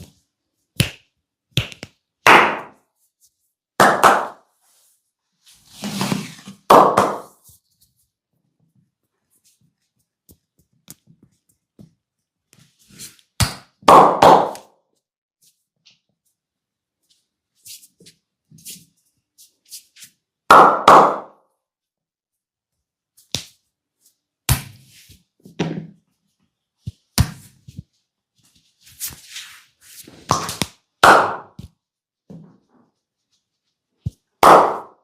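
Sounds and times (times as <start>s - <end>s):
palms slapping head: 0.8s - 2.8s, 3.8s - 4.4s, 30.3s - 31.8s, 34.1s - 35.0s.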